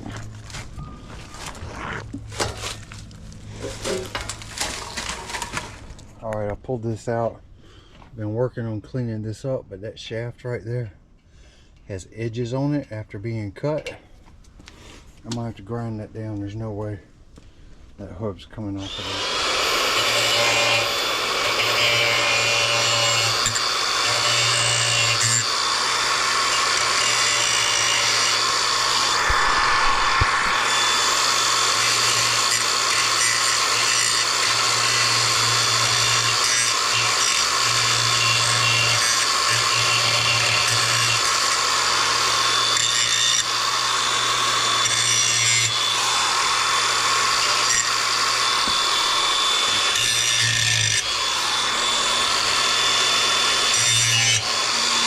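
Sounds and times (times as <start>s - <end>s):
power grinder grinding metal: 3.5s - 5.7s, 18.6s - 55.0s.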